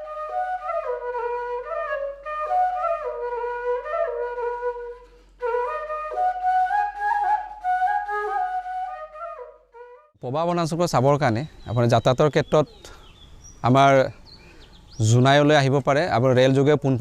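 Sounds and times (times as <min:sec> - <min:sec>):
solo flute playing slow melody: 0:00.0 - 0:10.2.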